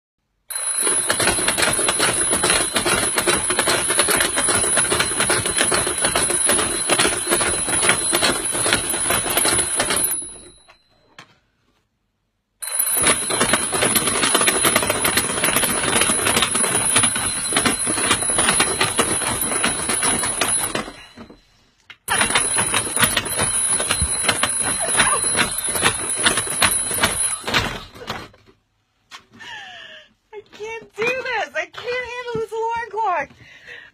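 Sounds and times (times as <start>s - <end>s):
alarm clock ringing: 0.5s - 11.0s, 12.6s - 21.4s, 22.1s - 28.2s.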